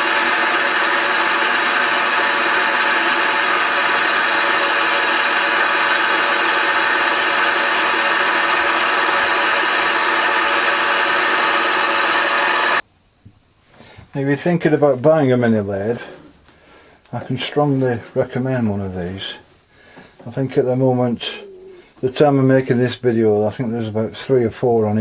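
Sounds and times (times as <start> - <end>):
lathe motor whine: 0.0 - 12.8.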